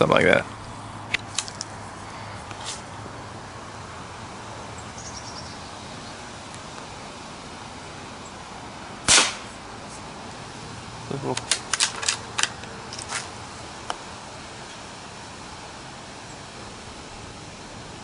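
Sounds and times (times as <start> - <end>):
rifle shot crack: 9.1 - 9.6.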